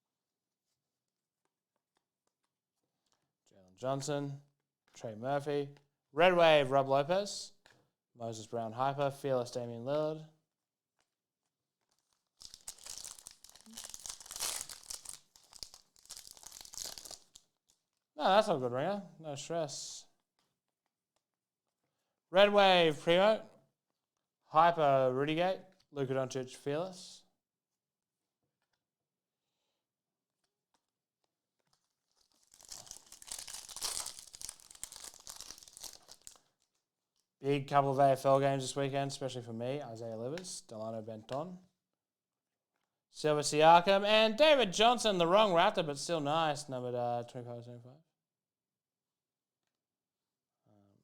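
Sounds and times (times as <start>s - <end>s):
wrapper tearing and crinkling: 11.8s - 18.0s, 31.6s - 36.8s.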